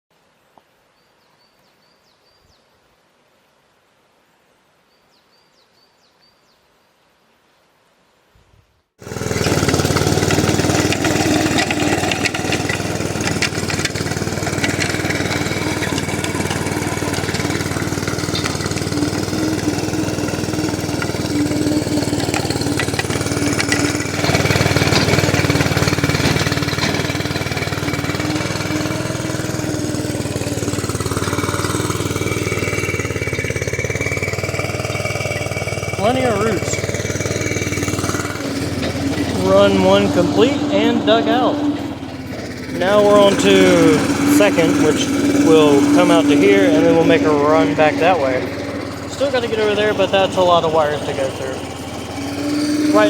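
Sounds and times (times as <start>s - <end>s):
small engine running: 9.0s - 53.0s.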